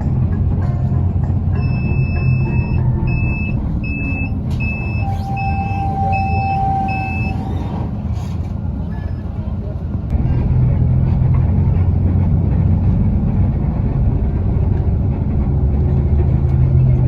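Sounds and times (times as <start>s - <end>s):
bus interior rumble: 0.0s - 17.0s
high electronic beeps: 1.6s - 7.4s.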